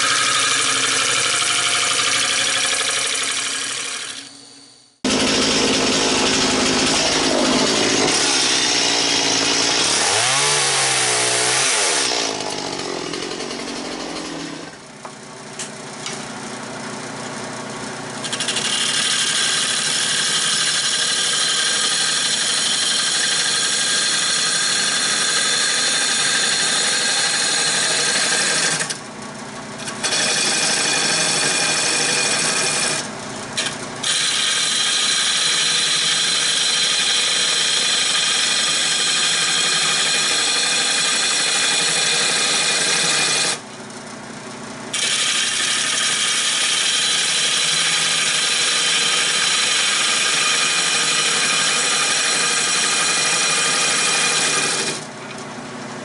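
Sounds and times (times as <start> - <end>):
gouge cutting wood on lathe: 0.0 - 4.4, 5.0 - 14.8, 18.2 - 29.0, 29.8 - 43.6, 44.9 - 55.1
lathe motor whine: 44.9 - 55.1.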